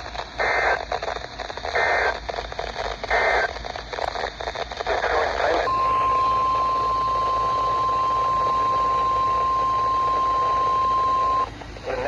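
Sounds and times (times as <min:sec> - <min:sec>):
light radio hiss: 0:00.0 - 0:12.0
high alarm beep: 0:05.7 - 0:11.5.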